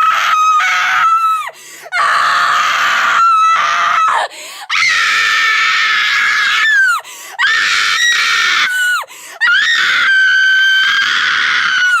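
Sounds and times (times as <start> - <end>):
short breaths: 1.5 - 1.9, 4.2 - 4.7, 7.0 - 7.4, 9.1 - 9.4.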